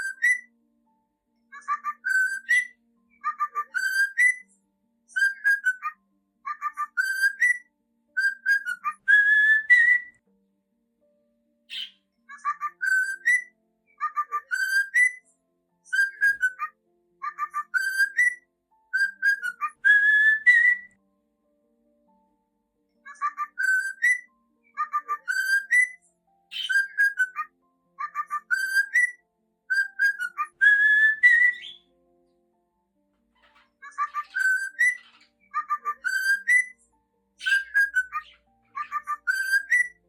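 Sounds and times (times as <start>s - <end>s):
cockatiel whistling: 0.0s - 0.4s, 1.6s - 4.5s, 5.1s - 5.9s, 6.5s - 7.6s, 8.2s - 10.2s, 11.7s - 13.5s, 14.1s - 15.2s, 15.9s - 18.4s, 19.0s - 21.0s, 23.1s - 31.9s, 33.4s - 36.8s, 37.4s - 40.0s.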